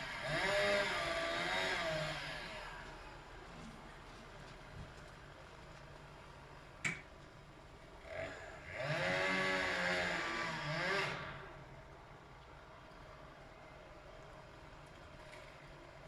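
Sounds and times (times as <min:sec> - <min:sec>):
engine revving: 0:00.0 - 0:02.8, 0:08.0 - 0:11.6.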